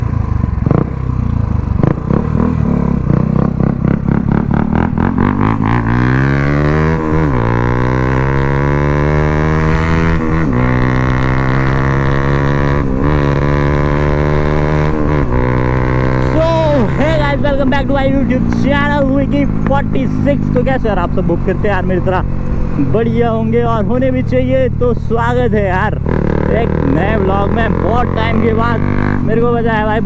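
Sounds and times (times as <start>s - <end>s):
motorcycle engine revving: 0.0s - 30.0s
motorcycle exhaust popping: 0.5s - 16.2s, 16.9s - 21.8s.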